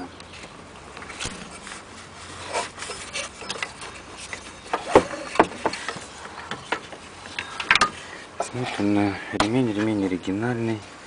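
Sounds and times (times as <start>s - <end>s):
belt rubbing and scraping: 1.1s - 8.9s.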